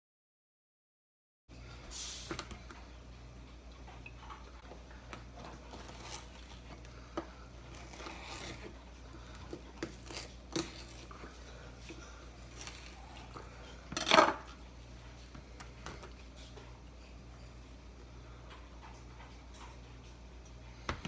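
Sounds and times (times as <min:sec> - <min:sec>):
steady low hum: 0:01.5 - 0:21.0
knife cutting fish: 0:05.2 - 0:06.9, 0:07.6 - 0:14.5.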